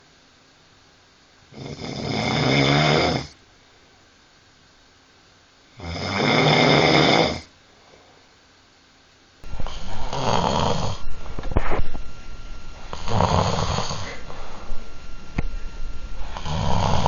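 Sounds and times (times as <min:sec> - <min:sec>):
man snoring: 0:01.5 - 0:03.4, 0:05.8 - 0:07.5, 0:09.5 - 0:11.7, 0:12.8 - 0:14.8, 0:16.2 - 0:17.0.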